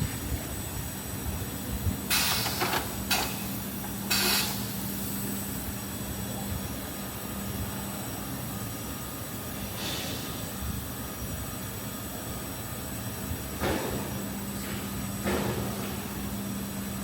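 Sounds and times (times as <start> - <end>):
short hissing bursts: 2.1 - 2.8, 4.1 - 5.2, 9.6 - 10.5.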